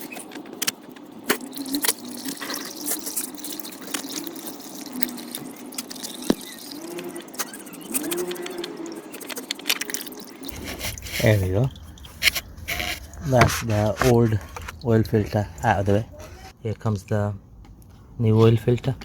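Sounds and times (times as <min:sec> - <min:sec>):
oil trickling and dripping: 0:01.3 - 0:16.5.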